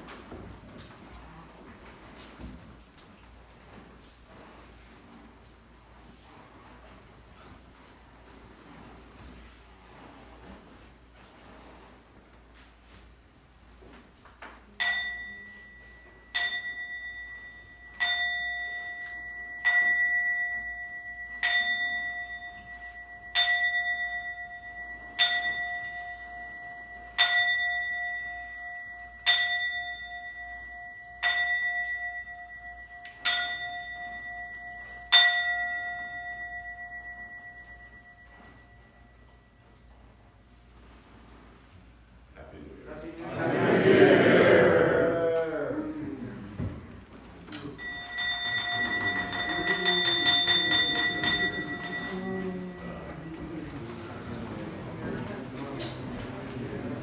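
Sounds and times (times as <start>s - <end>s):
bell tolling: 47.6s - 54.4s.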